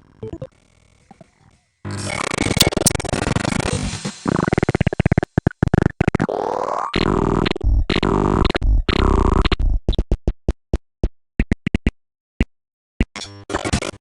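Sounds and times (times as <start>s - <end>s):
synthesizer ringtone music: 0.2s - 0.5s.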